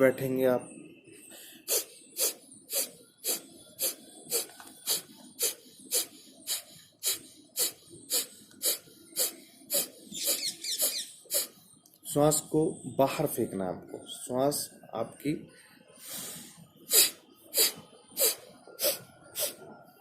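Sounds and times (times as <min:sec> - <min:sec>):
man exhaling forcefully through nose: 0:16.0 - 0:19.6.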